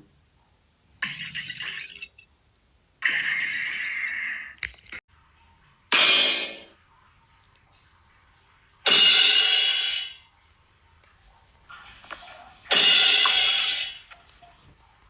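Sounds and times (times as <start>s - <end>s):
cartoon cymbal crash: 5.9s - 6.7s, 8.9s - 10.2s, 12.7s - 14.0s.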